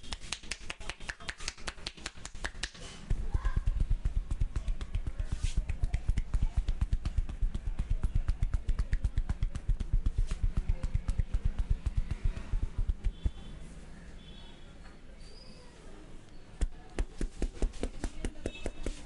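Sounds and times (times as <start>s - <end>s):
hands thumping on body: 16.6s - 19.0s.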